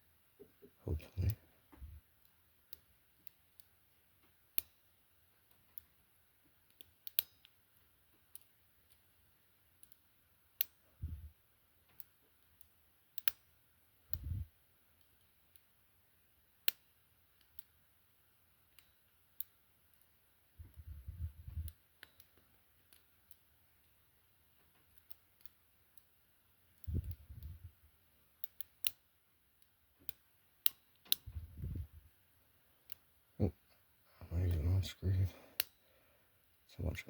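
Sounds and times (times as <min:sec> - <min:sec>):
soft low thumps: 0:31.3 - 0:32.0.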